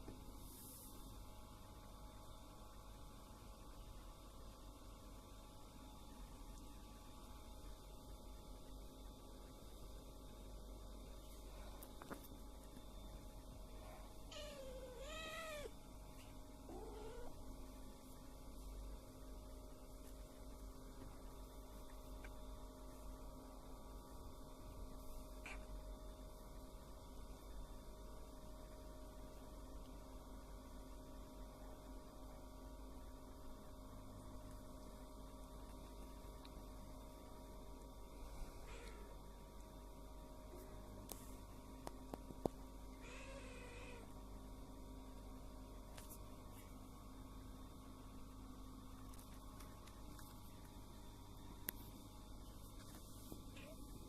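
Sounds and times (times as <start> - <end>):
low steady hum: 0.0 - 54.0
cat meowing: 14.3 - 15.7.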